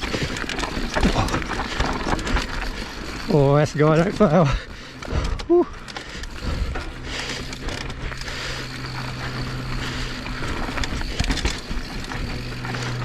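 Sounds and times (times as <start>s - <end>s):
bike tyres skidding over dirt: 0.0s - 5.0s, 5.8s - 13.0s
steady low hum: 0.0s - 13.0s.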